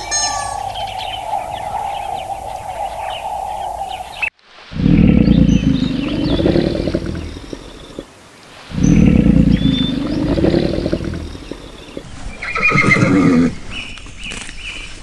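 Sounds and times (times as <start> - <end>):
horse neighing: 8.8 - 13.6.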